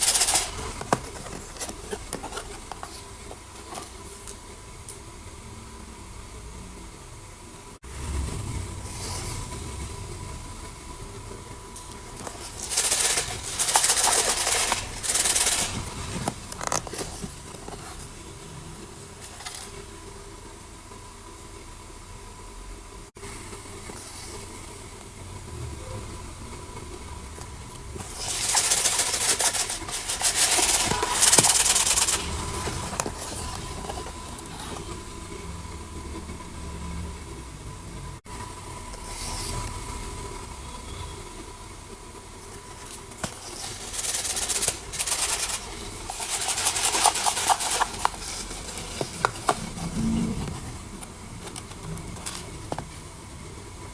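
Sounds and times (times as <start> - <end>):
plastic packaging crinkling: 0.0 - 3.8, 12.1 - 18.1, 28.0 - 35.2, 42.6 - 53.1.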